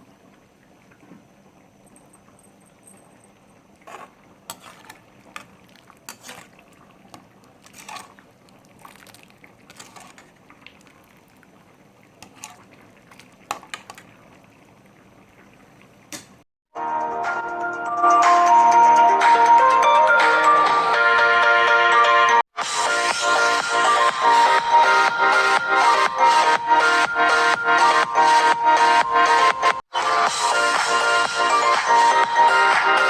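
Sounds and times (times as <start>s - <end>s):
pot simmering with bubbling: 0.0s - 16.4s.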